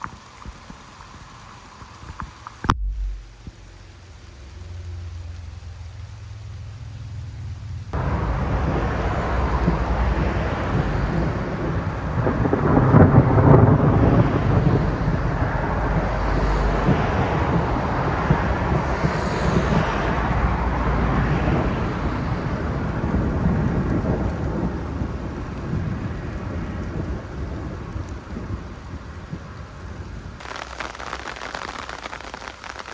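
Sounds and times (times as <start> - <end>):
rain: 0.0 - 32.9
thunder clap and rumble: 2.7 - 30.4.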